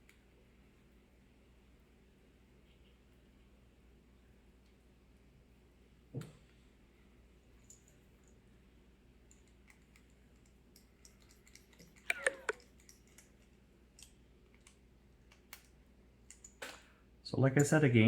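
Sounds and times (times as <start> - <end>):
screwdriver clicking on plastic: 11.0 - 13.3.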